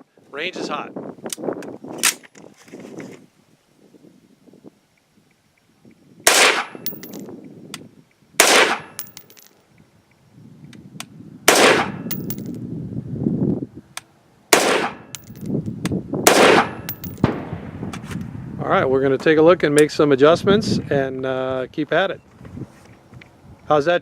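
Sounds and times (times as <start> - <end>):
rifle shots echoing: 6.3 - 7.2, 8.4 - 9.4, 11.5 - 12.5, 14.5 - 15.4, 16.3 - 17.7.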